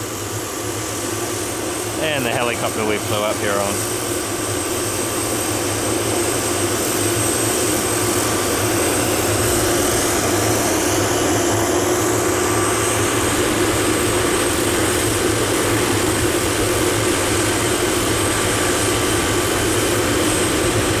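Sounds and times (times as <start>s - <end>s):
helicopter engine and rotor: 0.0s - 21.0s
high whine: 1.9s - 4.0s.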